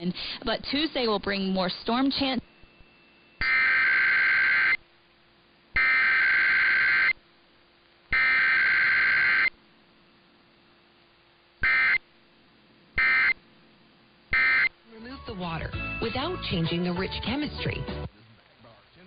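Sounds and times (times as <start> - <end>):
digital data burst tones: 3.4 - 4.8, 5.8 - 7.2, 8.1 - 9.5.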